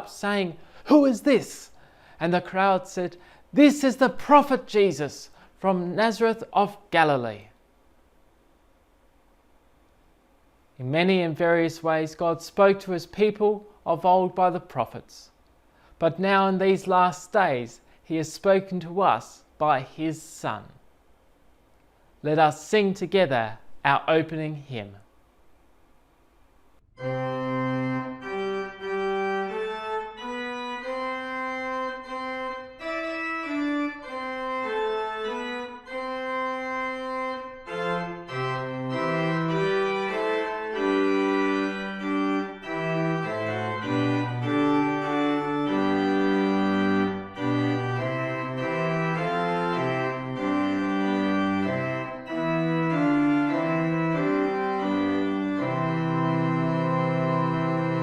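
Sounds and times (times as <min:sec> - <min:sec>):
organ playing hymn chords: 0:00.0 - 0:07.4, 0:15.8 - 0:20.6, 0:26.9 - 0:58.0.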